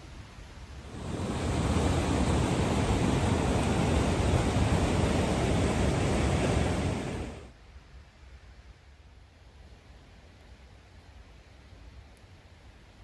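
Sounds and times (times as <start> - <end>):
river rushing: 0.9 - 7.5
waterfall roaring: 0.9 - 7.5.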